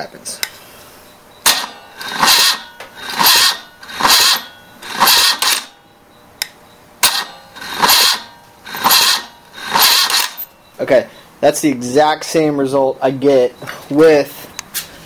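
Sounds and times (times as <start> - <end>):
engine turning over slowly: 1.4 - 5.8, 7.0 - 10.6
starter solenoid clicking: 1.4 - 5.8, 6.4 - 10.5.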